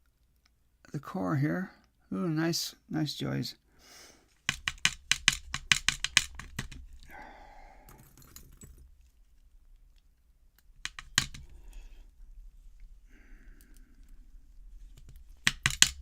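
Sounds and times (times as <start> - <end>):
lock pins clicking: 4.5 - 7.0, 10.6 - 11.8, 14.9 - 16.0.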